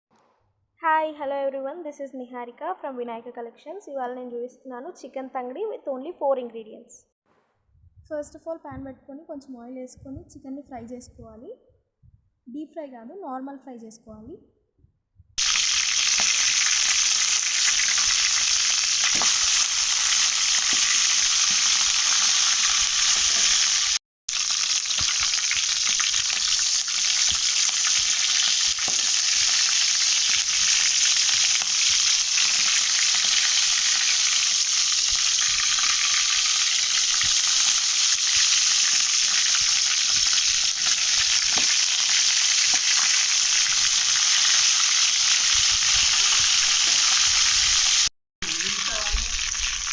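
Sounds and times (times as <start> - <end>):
chicken frying in oil: 15.4 - 49.9.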